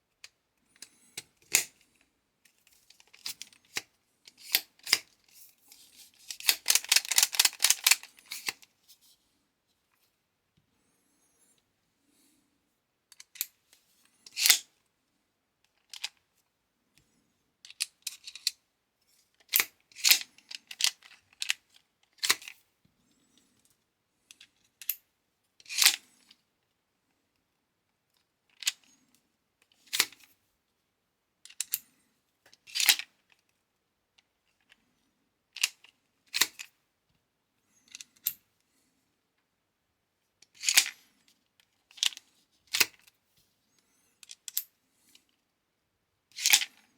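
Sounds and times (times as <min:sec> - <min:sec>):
hand tool mechanism clacking: 0:06.3 - 0:08.5.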